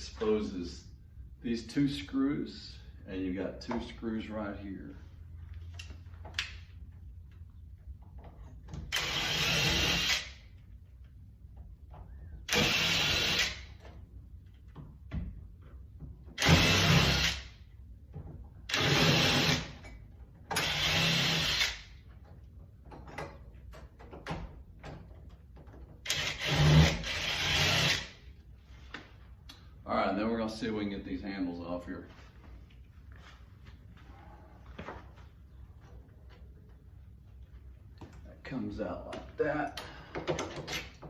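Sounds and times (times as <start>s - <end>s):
cordless drill bursts: 8.9s - 10.4s, 12.5s - 13.7s, 16.4s - 17.5s, 18.7s - 19.7s, 20.6s - 21.9s, 26.1s - 28.2s.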